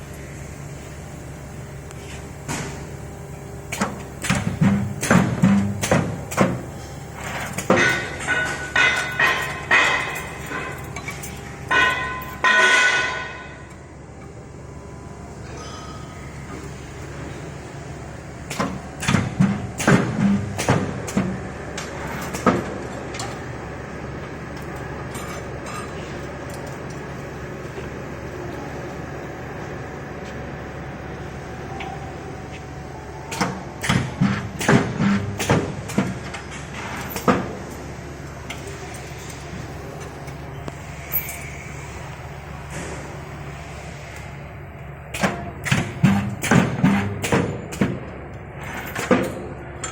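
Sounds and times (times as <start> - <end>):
sharp metallic clanks: 7.4 - 13.7.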